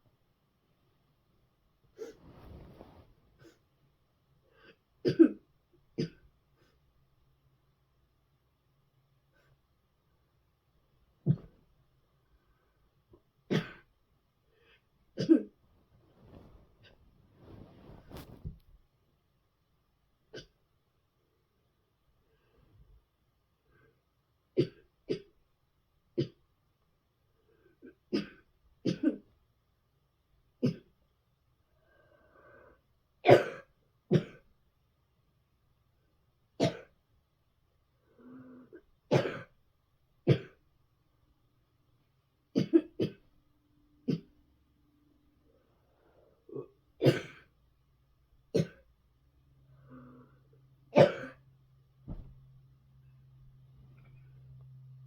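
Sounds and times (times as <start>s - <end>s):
person coughing hard: 5.0s - 5.4s, 13.5s - 13.8s, 33.2s - 34.4s, 36.6s - 36.9s, 39.1s - 39.5s, 42.6s - 43.2s, 46.5s - 47.5s, 48.6s - 48.8s, 50.9s - 51.4s.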